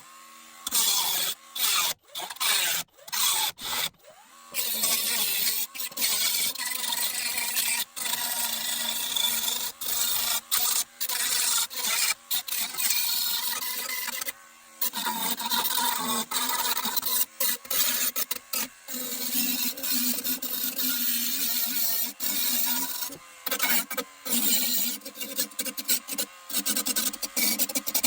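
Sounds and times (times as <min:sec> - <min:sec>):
power tool grinding on metal: 0:00.0 - 0:28.0.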